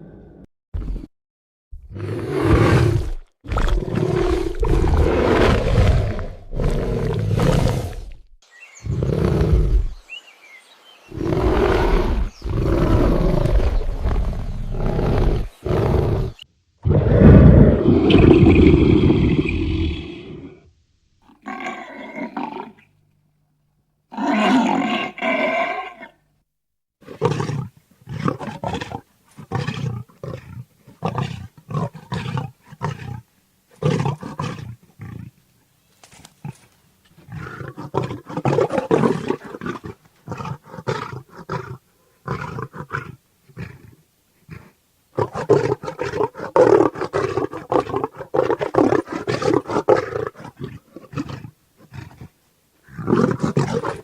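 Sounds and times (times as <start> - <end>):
tiger roaring: 1.9 - 8.3, 8.9 - 10.0, 11.1 - 20.6, 24.1 - 26.2, 44.5 - 54.0.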